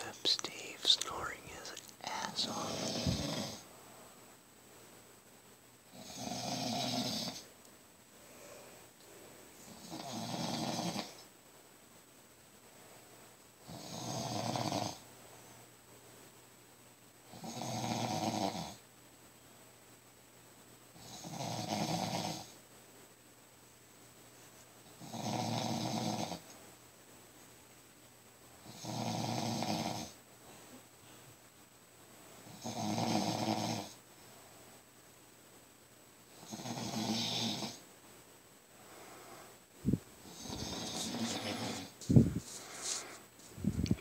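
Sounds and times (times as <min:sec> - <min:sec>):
quiet breathing: 0:00.0 - 0:05.0, 0:08.1 - 0:11.3, 0:30.0 - 0:31.4, 0:38.7 - 0:44.0
man snoring: 0:00.5 - 0:03.6, 0:05.9 - 0:07.4, 0:09.7 - 0:11.2, 0:13.7 - 0:15.0, 0:17.3 - 0:18.8, 0:21.0 - 0:22.5, 0:25.0 - 0:26.4, 0:28.6 - 0:30.2, 0:32.5 - 0:34.0, 0:36.4 - 0:37.8, 0:40.3 - 0:42.0.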